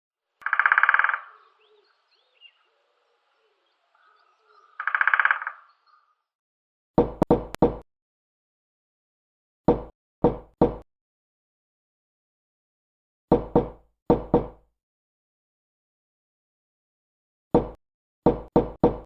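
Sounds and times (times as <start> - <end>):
woodpecker drumming: 0.4 - 1.9, 4.0 - 6.1
faint bird chirps: 0.4 - 6.3
loud wooden knocks: 7.0 - 7.8, 9.7 - 10.8, 13.3 - 14.6, 17.6 - 19.0.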